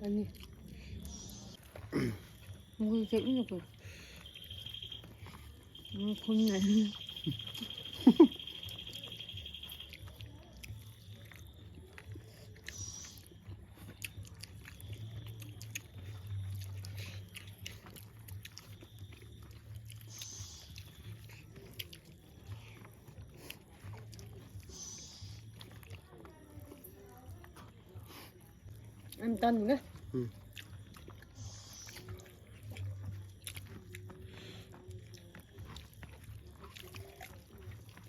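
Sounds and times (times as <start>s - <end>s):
people chewing and biting: 0.0s - 38.0s
faint steady high tone: 0.9s - 17.9s.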